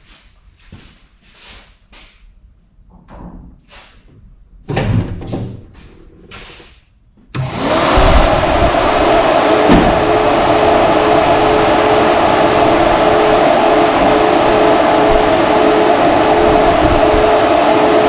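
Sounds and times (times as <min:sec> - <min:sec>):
electric fans rushing air: 0:07.3 - 0:18.0
fan motor hum: 0:07.3 - 0:18.0
light thump: 0:09.7 - 0:10.0.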